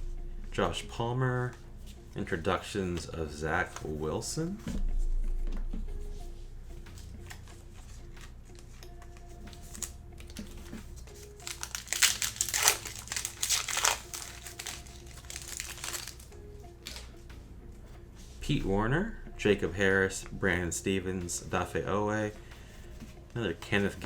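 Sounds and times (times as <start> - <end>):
faint background music: 0.0 - 24.0
wrapper tearing and crinkling: 11.1 - 17.0.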